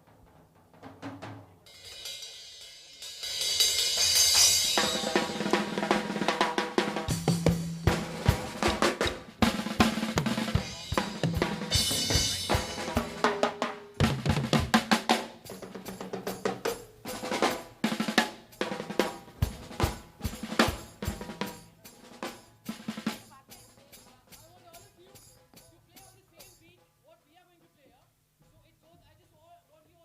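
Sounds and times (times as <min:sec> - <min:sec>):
snare rolls and rimshots: 0:04.0 - 0:15.4.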